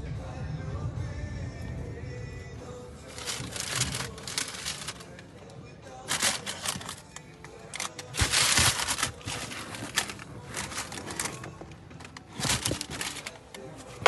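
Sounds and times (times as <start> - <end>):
rustling and crinkling wrapping: 3.0 - 14.0.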